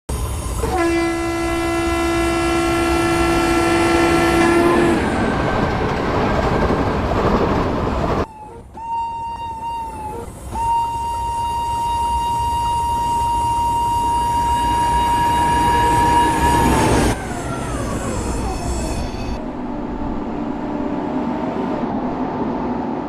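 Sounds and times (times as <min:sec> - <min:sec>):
moving train rushing: 0:00.1 - 0:23.0
train horn blast: 0:00.6 - 0:05.2, 0:08.6 - 0:17.2.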